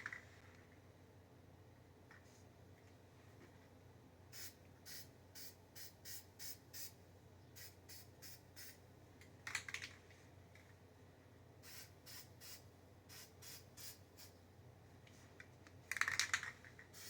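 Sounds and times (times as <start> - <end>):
spray paint hissing: 4.4 - 6.9, 7.6 - 8.8, 11.6 - 14.3
spray can rattle: 9.4 - 10.0, 15.9 - 17.0.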